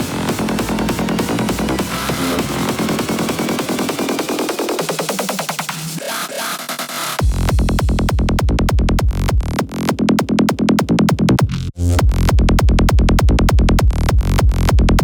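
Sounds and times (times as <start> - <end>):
electronic dance music: 0.0 - 8.1.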